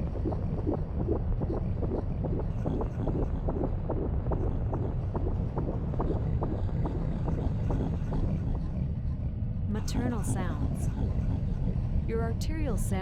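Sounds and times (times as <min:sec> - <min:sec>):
fetal heartbeat whooshing: 0:00.0 - 0:08.6
steady low rumble: 0:00.0 - 0:13.0.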